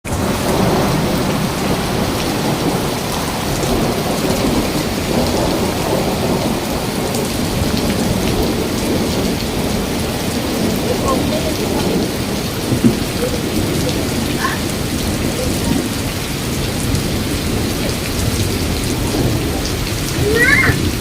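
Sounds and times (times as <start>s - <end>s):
heavy rain pouring: 0.0s - 21.0s.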